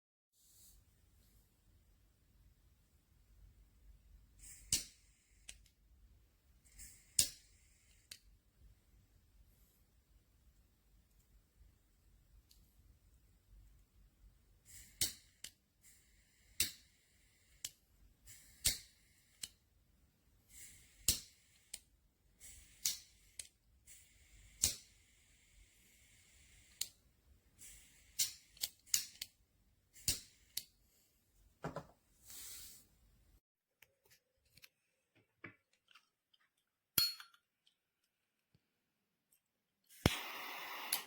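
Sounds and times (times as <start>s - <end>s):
short hiss: 32.2s - 32.9s, 40.0s - 41.0s.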